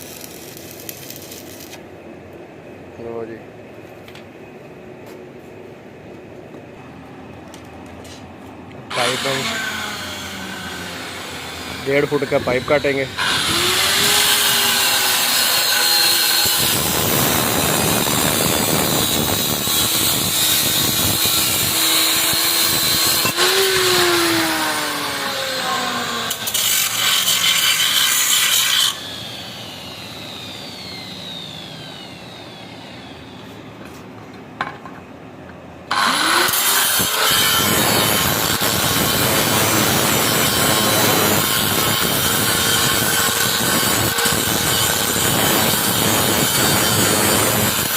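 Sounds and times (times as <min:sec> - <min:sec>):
power cutter grinding metal pipe: 0:08.9 - 0:29.8, 0:35.9 - 0:47.9.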